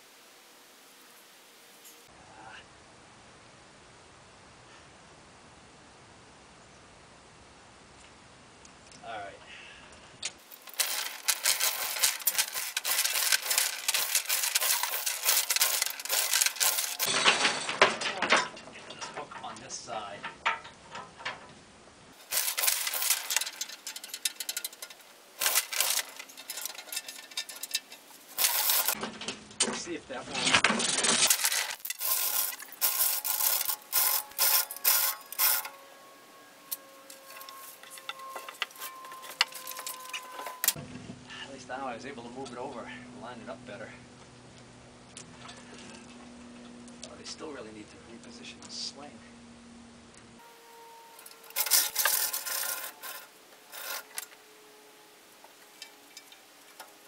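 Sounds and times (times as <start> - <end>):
chain and hook rattling: 10.5 - 19.2, 22.2 - 29.0, 31.2 - 40.8, 51.2 - 54.4.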